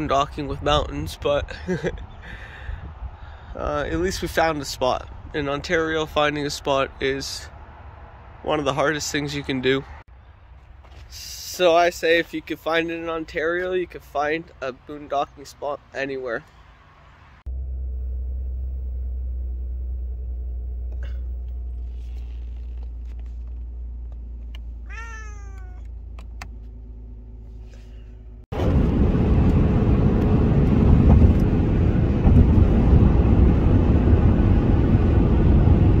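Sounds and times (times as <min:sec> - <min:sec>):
vehicle road noise: 0:00.0 - 0:36.0
low steady hum: 0:17.5 - 0:24.8
cat meowing: 0:24.8 - 0:25.9.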